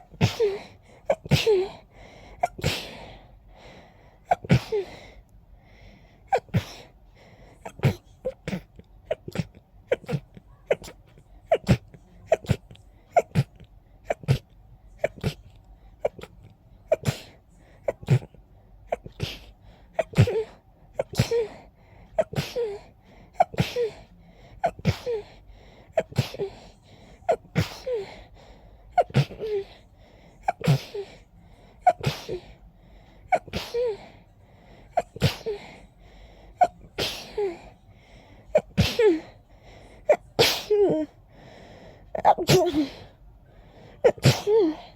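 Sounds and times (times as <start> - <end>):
person sneezing: 7.7 - 21.6, 22.2 - 26.6, 27.3 - 28.2, 29.0 - 29.8, 30.4 - 31.2, 31.8 - 32.6, 33.2 - 34.1, 35.0 - 35.8, 36.6 - 37.7, 38.5 - 39.3, 40.1 - 41.1, 42.2 - 43.1, 44.1 - 44.9.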